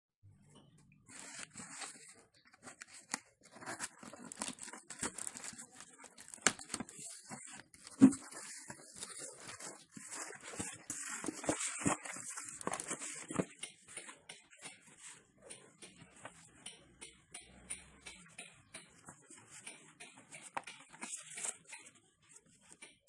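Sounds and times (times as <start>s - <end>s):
packaging rustling and crinkling: 1.1s - 13.6s.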